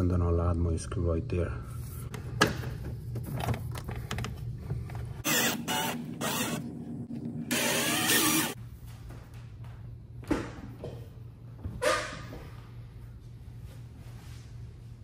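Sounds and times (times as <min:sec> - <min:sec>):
cordless drill motor running: 0:05.2 - 0:06.6, 0:07.5 - 0:08.6.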